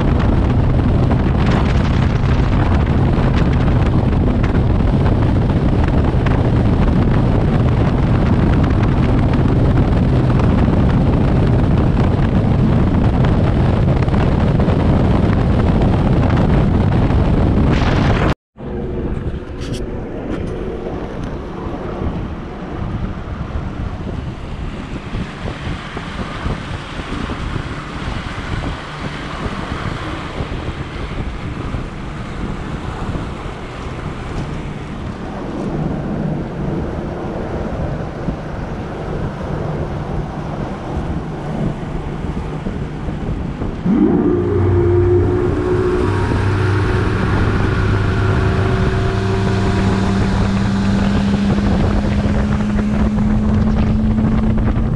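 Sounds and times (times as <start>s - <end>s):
wind on microphone: 0.0s - 54.9s
outboard motor running: 26.5s - 54.9s.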